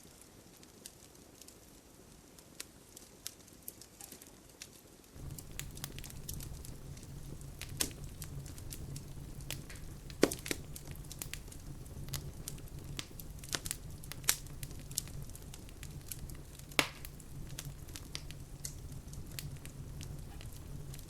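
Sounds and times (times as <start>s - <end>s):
wood fire crackling: 0.0s - 21.0s
low burning rumble: 5.2s - 21.0s.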